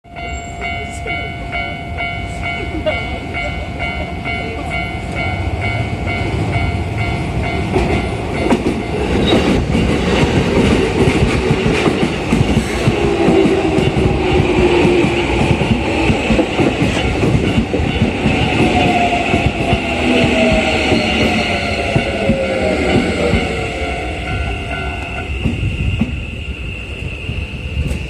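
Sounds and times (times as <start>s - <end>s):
level-crossing bell ringing: 0.0s - 9.3s, 16.8s - 25.4s
train wheels clattering on rails: 2.5s - 26.4s.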